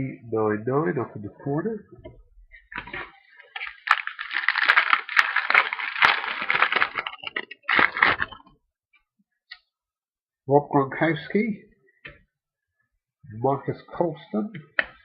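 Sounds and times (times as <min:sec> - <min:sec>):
card pack wrapper crinkling and tearing: 0:02.8 - 0:08.4.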